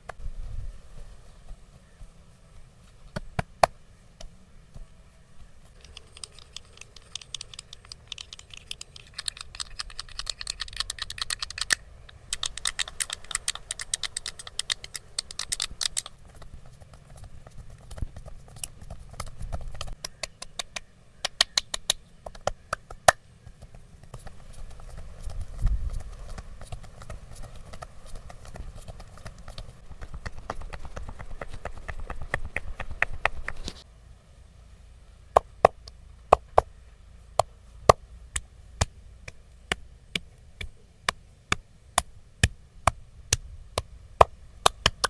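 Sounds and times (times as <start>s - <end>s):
wooden sticks tapping on body: 5.8s - 33.8s.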